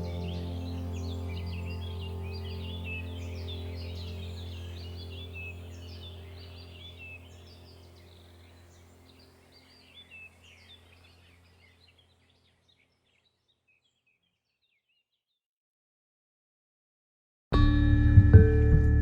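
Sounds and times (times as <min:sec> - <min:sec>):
steady low hum: 0:00.0 - 0:11.8
small birds chirping: 0:00.0 - 0:15.4.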